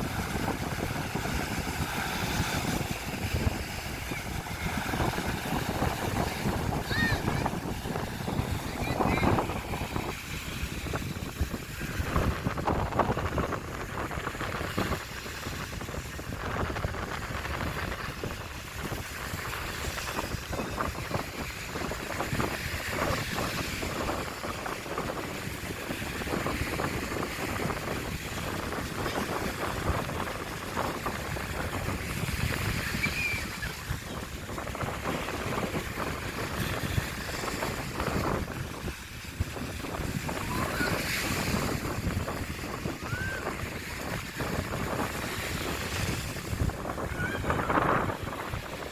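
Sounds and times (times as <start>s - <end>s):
sea waves on shore: 0.0s - 48.9s
wind buffeting microphone: 0.0s - 48.9s.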